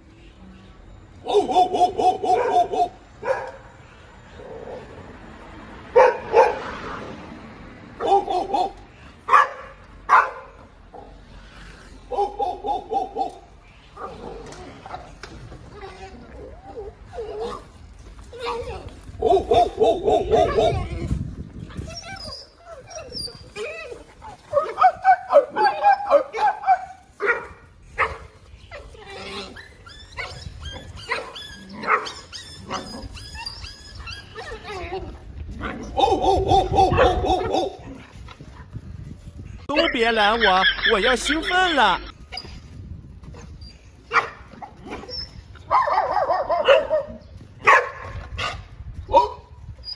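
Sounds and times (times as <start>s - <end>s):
dog yipping: 1.2s - 3.6s, 19.2s - 21.0s, 21.8s - 27.4s, 28.0s - 34.9s, 35.8s - 37.8s, 43.6s - 49.9s
dog barking: 1.2s - 3.7s, 6.0s - 6.7s, 8.0s - 11.1s, 12.1s - 13.4s, 19.2s - 20.9s, 24.5s - 28.2s, 31.1s - 32.1s, 35.9s - 37.8s, 44.1s - 44.4s, 45.7s - 49.5s.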